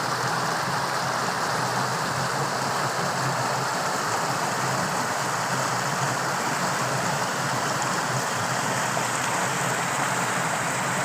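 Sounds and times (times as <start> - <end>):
torrential running water: 0.0 - 11.0.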